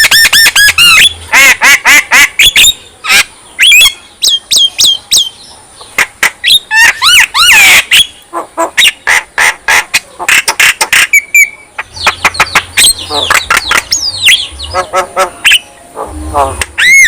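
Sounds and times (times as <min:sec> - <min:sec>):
bird singing with chatter and whistles: 0:02.4 - 0:08.2, 0:10.4 - 0:17.0.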